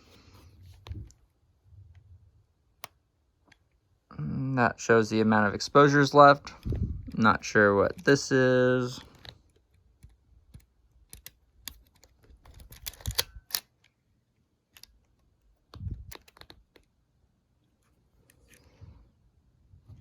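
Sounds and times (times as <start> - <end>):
camera clicks and taps: 10.5 - 13.8.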